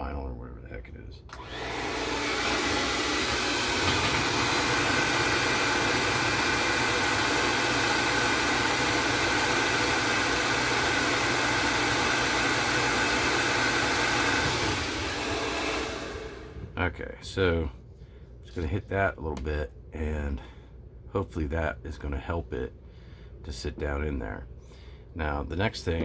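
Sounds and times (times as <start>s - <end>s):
hair dryer running: 1.3s - 16.8s.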